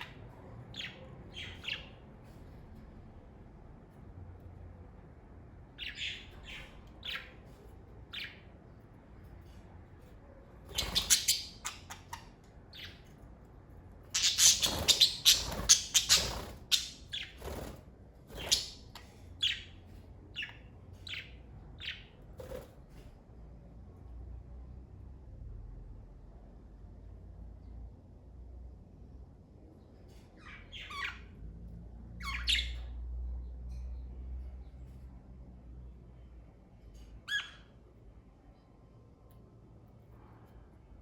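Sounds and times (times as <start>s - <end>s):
budgerigars chirping: 5.8s - 7.4s, 10.7s - 13.1s, 14.1s - 17.6s, 18.3s - 19.8s, 30.4s - 31.3s, 32.2s - 33.0s, 37.3s - 37.7s.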